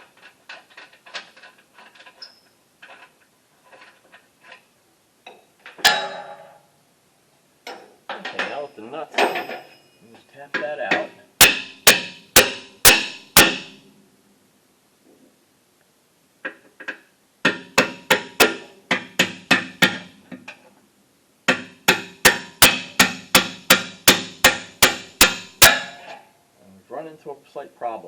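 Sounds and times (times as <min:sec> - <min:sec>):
hammer striking metal nut: 0:05.3 - 0:06.6, 0:07.7 - 0:09.8, 0:10.6 - 0:13.8, 0:16.8 - 0:20.5, 0:21.5 - 0:26.2.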